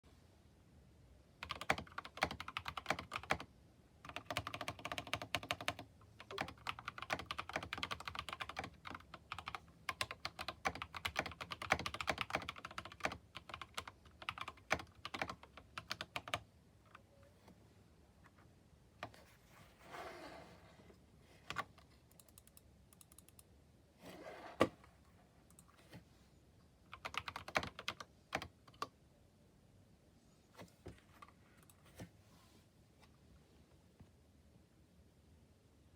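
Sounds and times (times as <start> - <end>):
mechanical keyboard typing: 1.4 - 17.0, 21.5 - 23.5, 26.9 - 28.9.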